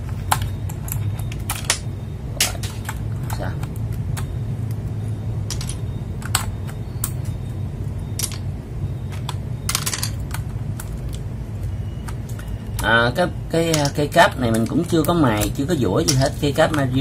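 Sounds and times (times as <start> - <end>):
steady low hum: 0.0 - 17.0
plastic keycaps clicking: 13.7 - 17.0.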